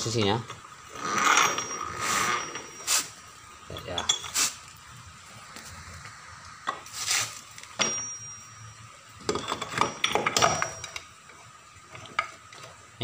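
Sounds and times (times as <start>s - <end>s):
steel gears clinking and knocking: 0.9s - 4.6s, 7.5s - 11.1s.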